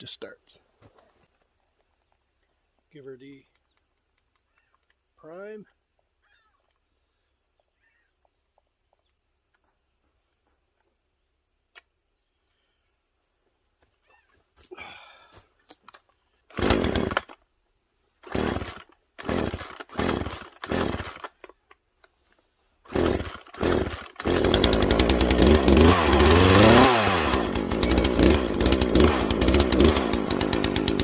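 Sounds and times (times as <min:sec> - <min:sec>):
chainsaw engine running: 0:16.5 - 0:17.4, 0:18.2 - 0:21.4, 0:22.9 - 0:31.0
recoil starter pulls: 0:16.5 - 0:17.4, 0:18.2 - 0:21.6, 0:22.9 - 0:31.0.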